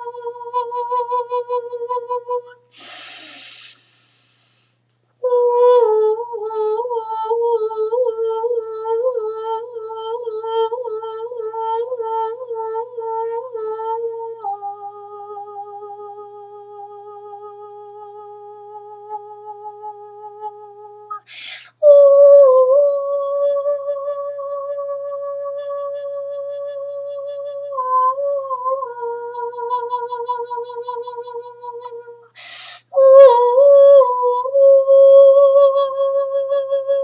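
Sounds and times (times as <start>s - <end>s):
sharp breath in: 2.7s - 4.8s, 21.2s - 21.8s, 32.4s - 32.9s.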